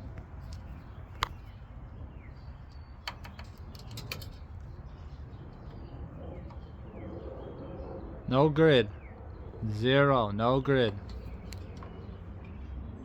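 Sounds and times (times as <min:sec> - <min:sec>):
steady low hum: 0:00.0 - 0:13.0
sharp clicks: 0:10.9 - 0:12.0.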